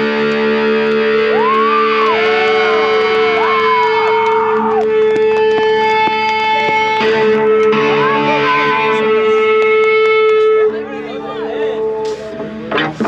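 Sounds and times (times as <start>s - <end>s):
distorted electric guitar droning: 0.0s - 13.0s.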